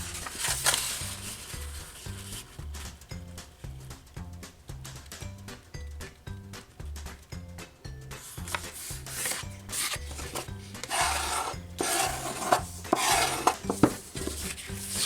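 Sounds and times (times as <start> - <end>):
paper folding and creasing: 0.0 - 2.6, 8.2 - 15.0
background music with a beat: 2.4 - 9.7.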